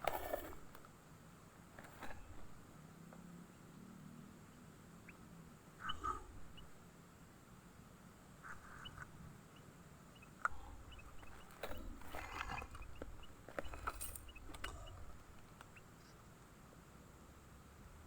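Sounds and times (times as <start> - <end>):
high bird chirps: 5.8 - 6.7, 8.4 - 16.1.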